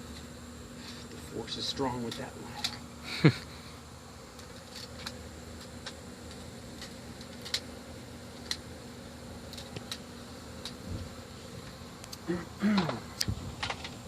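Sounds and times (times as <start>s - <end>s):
honey bees buzzing: 0.0s - 14.0s.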